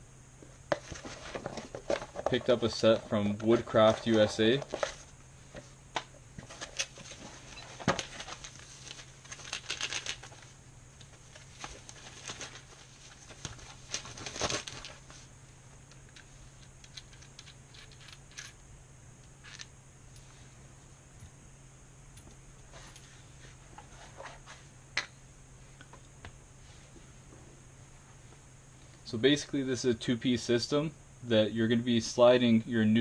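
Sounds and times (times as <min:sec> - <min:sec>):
packaging crinkling and rustling: 0:06.4 - 0:15.3.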